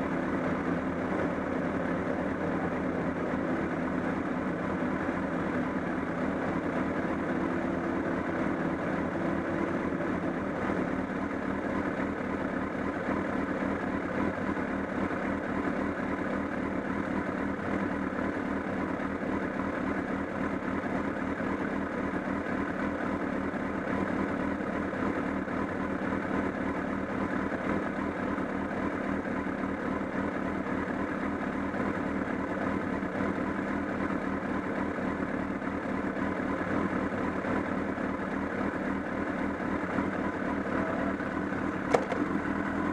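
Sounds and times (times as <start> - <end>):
motorcycle engine idling: 0.0 - 42.9
flapping clattering engine noise: 34.4 - 42.9.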